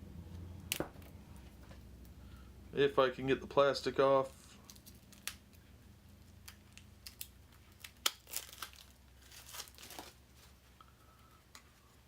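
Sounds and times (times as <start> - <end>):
plastic wrap tearing and crinkling: 6.4 - 10.5.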